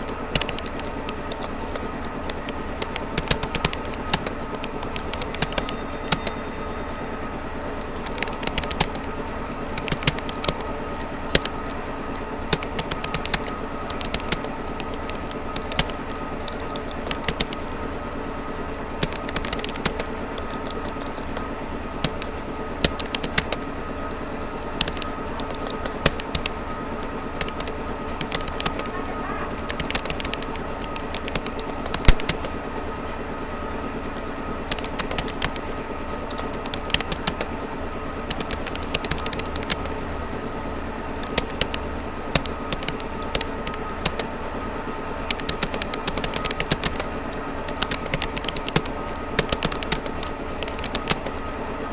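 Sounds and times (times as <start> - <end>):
steady background hum: 0.0 - 51.9
computer keyboard key clicks: 12.5 - 17.6, 19.0 - 21.2, 22.0 - 23.6, 24.8 - 26.5, 29.7 - 32.5, 34.7 - 35.6, 36.3 - 37.4, 38.3 - 39.9, 41.2 - 44.2, 45.3 - 47.0, 47.7 - 51.3.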